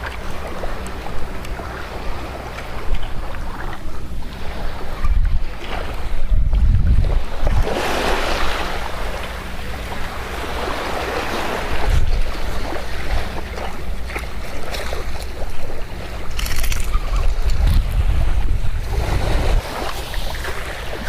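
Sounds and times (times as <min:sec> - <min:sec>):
wind buffeting microphone: 0:00.0 - 0:21.0
surf breaking on beach: 0:04.4 - 0:09.4, 0:17.2 - 0:21.0.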